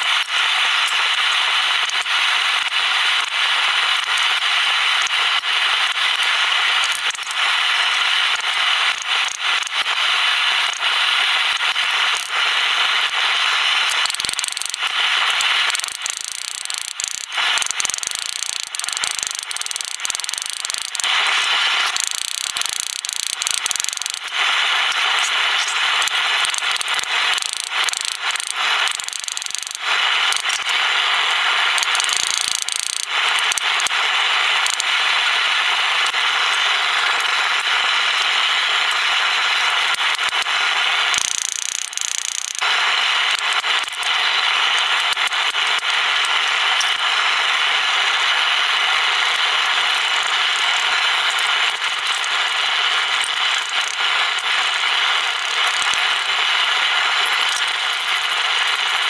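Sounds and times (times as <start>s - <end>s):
power tool abrading metal: 13.8s - 30.7s.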